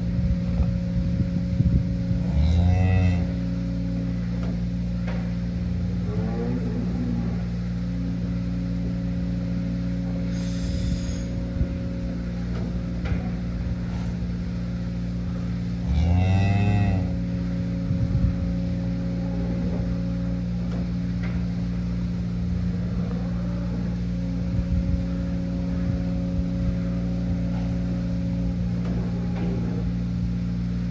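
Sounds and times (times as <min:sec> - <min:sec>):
steady mechanical hum: 0:00.0 - 0:30.9
cow mooing: 0:02.2 - 0:04.0, 0:05.6 - 0:07.8, 0:10.3 - 0:17.8, 0:22.9 - 0:30.2.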